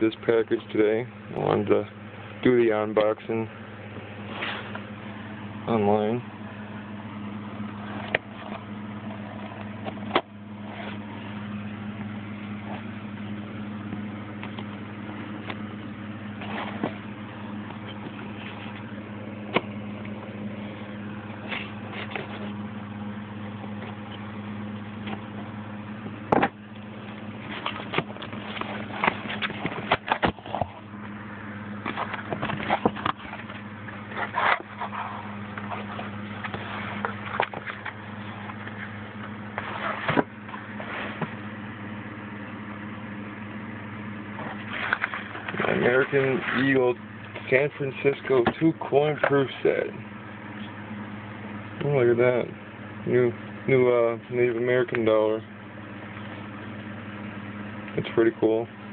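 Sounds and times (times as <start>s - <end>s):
steady low hum: 0.0s - 58.9s.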